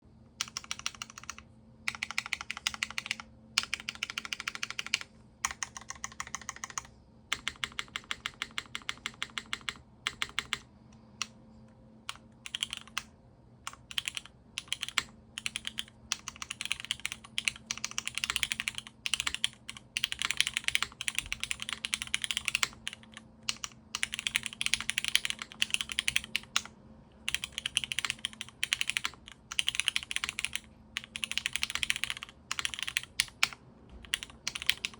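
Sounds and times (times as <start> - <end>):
mechanical keyboard typing: 0.4 - 10.7, 12.0 - 13.1, 13.7 - 26.7, 27.3 - 34.9.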